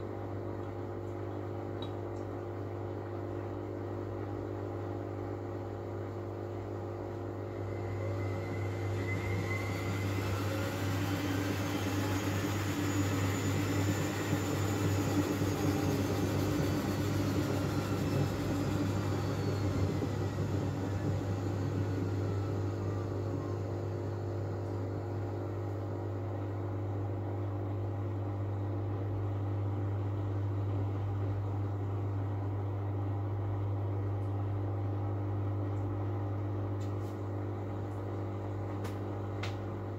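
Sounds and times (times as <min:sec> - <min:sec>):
washing machine low hum: 0:00.0 - 0:39.9
drum motor whine: 0:06.7 - 0:27.8.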